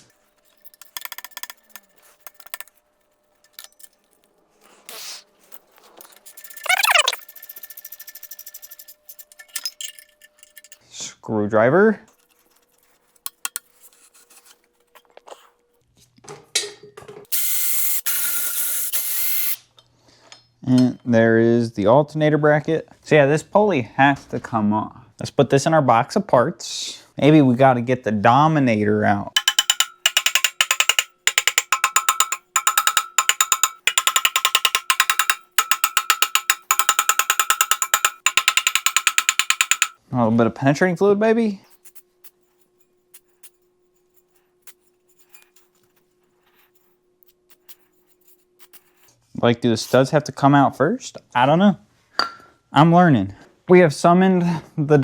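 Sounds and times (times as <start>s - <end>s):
hand tools clinking on metal: 29.4s - 40.0s
impact wrench hammering: 29.4s - 40.0s.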